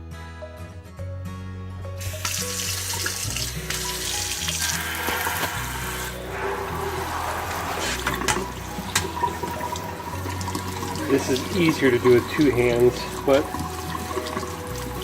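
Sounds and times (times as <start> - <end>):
tap water splashing in sink: 2.1 - 5.7, 8.0 - 15.0.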